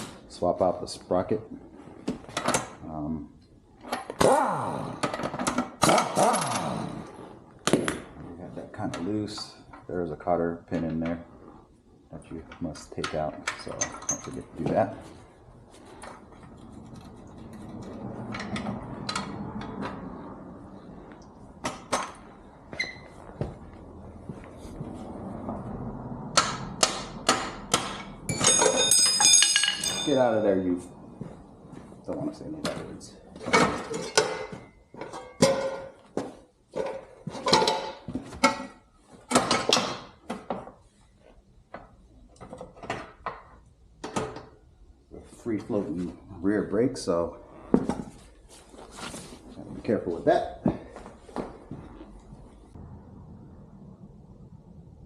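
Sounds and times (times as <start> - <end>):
metal tools clanking and scraping: 13.0 - 15.1, 27.3 - 30.6, 33.4 - 36.0, 36.7 - 40.1
sharp metal clanks: 26.4 - 30.5
metal clinks of hand tools: 28.3 - 30.4.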